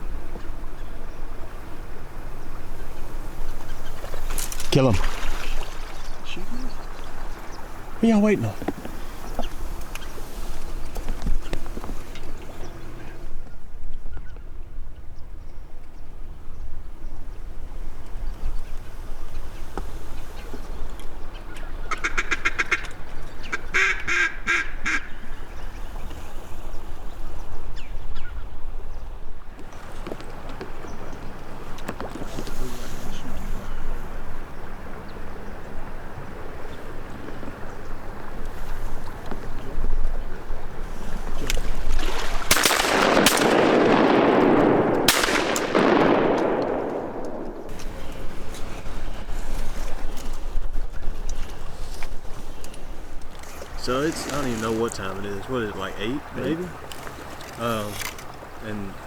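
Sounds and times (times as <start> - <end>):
low rumble of wind: 0.0 - 59.0
duck quacking: 21.9 - 25.1
shotgun shots: 42.4 - 47.8.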